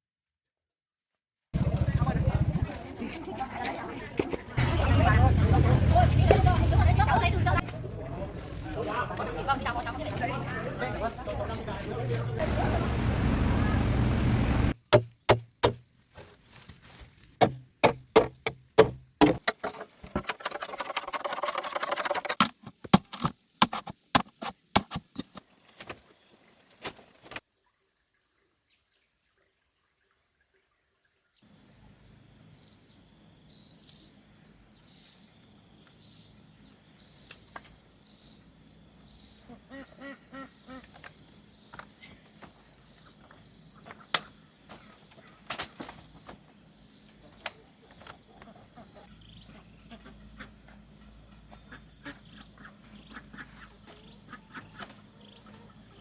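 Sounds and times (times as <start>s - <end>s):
insects chirping: 4.6s - 15.2s, 25.0s - 56.0s
sharp knocks and thuds: 12.4s - 15.8s, 17.4s - 20.2s.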